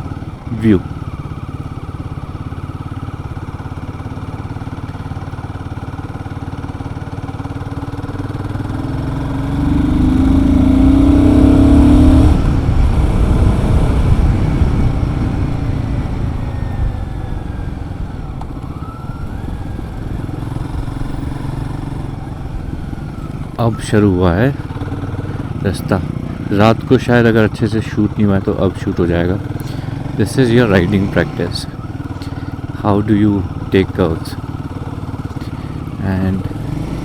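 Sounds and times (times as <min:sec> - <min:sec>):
motorcycle engine accelerating: 0:00.0 - 0:37.0.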